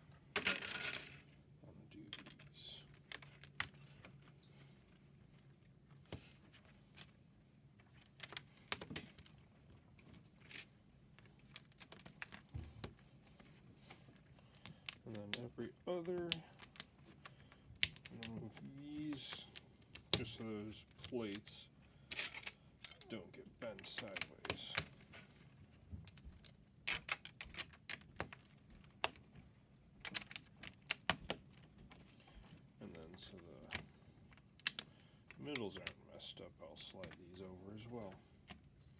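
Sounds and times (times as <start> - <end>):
plastic building bricks clicking: 14.5 - 21.5, 26.1 - 29.4, 30.0 - 32.1, 32.9 - 36.0.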